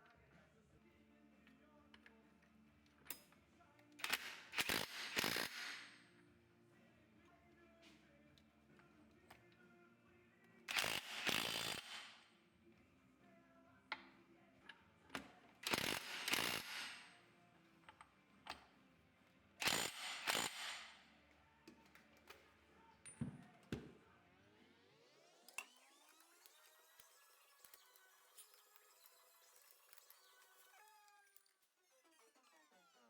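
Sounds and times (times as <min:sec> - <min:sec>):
ratchet tool noise: 0:04.0 - 0:06.1, 0:10.7 - 0:12.2, 0:15.6 - 0:17.2, 0:19.6 - 0:21.0, 0:25.5 - 0:31.5.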